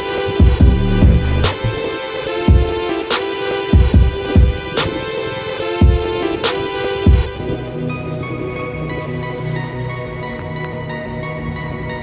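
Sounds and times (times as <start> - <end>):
electronic music with steady beat: 0.0 - 11.6.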